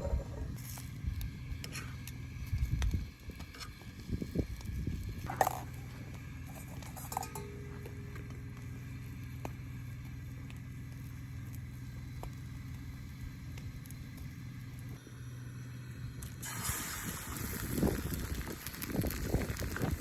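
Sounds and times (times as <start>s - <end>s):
steady low hum: 0.0s - 17.4s
camp cookware knocking and clinking: 5.3s - 8.2s.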